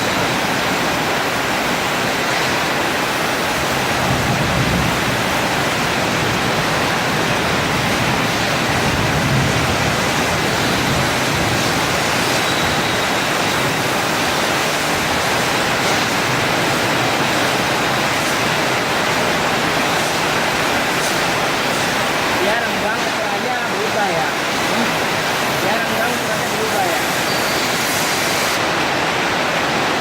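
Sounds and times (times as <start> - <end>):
cutting torch hissing: 10.1 - 28.7
faint high whine: 12.0 - 13.8.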